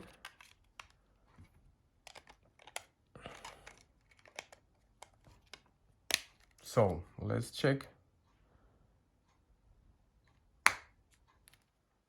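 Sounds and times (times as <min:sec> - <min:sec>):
mobile phone handling: 0:00.0 - 0:06.6
small plastic clicks: 0:00.0 - 0:06.6.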